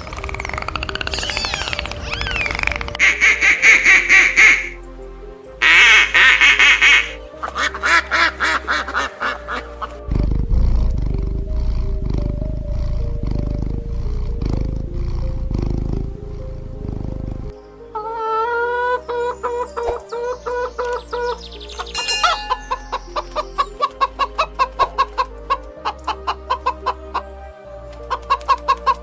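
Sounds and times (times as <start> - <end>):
rapidly repeated animal calls: 0.0 - 4.8, 5.6 - 19.9, 20.8 - 27.3
background music with low beat: 0.0 - 17.6.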